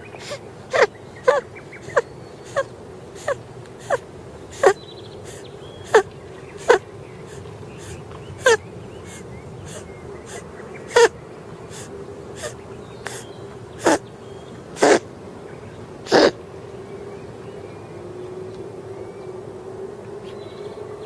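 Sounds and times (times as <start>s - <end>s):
kitten sneezing: 0.1s - 11.1s, 11.7s - 13.2s, 13.8s - 14.0s, 14.8s - 15.1s, 16.1s - 16.4s.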